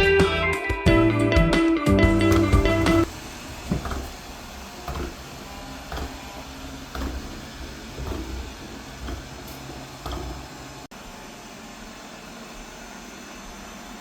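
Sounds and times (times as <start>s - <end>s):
robot vacuum bumping: 2.1s - 10.9s
robot vacuum motor hum: 2.1s - 14.0s.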